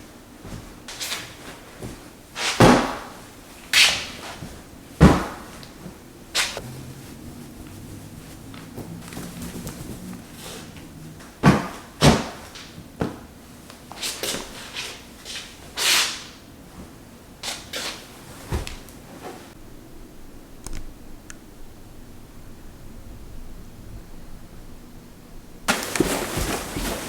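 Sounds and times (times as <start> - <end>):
scraping rustles: 0.4 - 19.6, 25.7 - 27.0.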